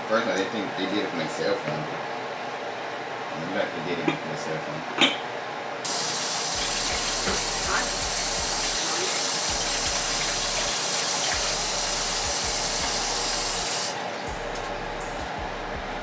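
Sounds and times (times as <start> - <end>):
kitchen tap running: 5.9 - 14.3.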